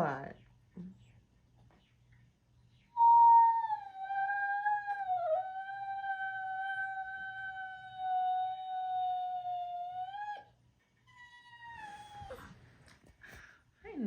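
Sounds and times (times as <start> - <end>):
dog howling: 3.0 - 10.5, 11.1 - 12.6.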